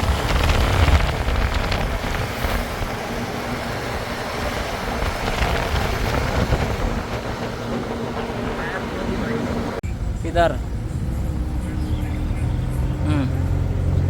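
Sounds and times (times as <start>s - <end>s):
heavy diesel engine running: 0.0s - 14.0s.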